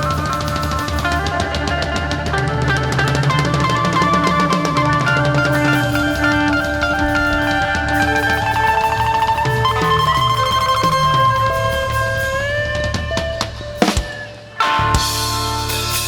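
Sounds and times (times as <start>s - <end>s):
bass guitar: 0.0s - 16.0s
drum kit: 0.0s - 16.0s
guitars: 0.0s - 16.0s.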